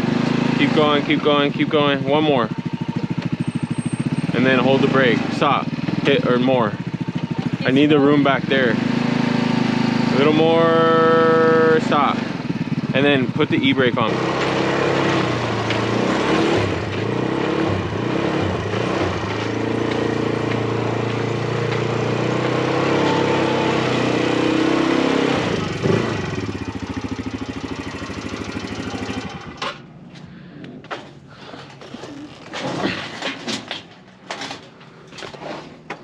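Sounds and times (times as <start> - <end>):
vehicle engine idling: 0.0 - 23.8, 25.5 - 30.5.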